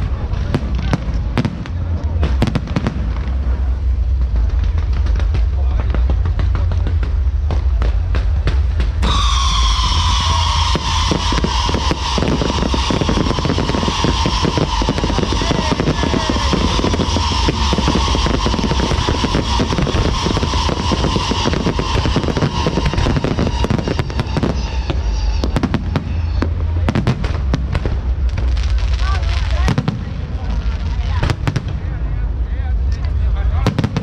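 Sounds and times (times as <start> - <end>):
firecrackers crackling: 0.0 - 34.0
firework whistle falling in pitch: 8.9 - 27.6.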